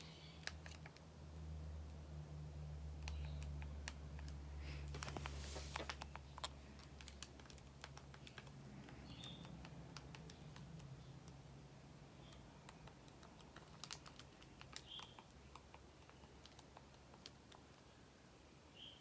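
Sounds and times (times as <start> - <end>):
brief rustle: 4.8 - 6.1.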